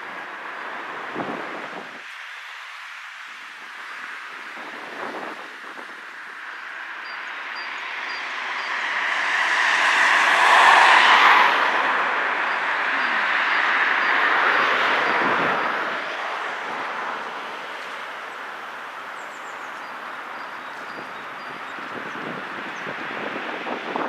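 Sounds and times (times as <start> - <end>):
vehicle passing: 6.8 - 21.6.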